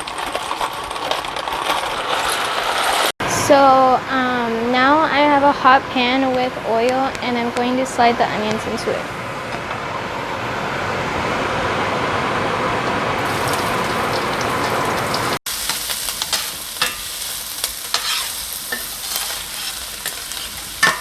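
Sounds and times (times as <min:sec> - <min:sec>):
oil popping: 0:13.2 - 0:21.0
onions sizzling in oil: 0:13.2 - 0:21.0.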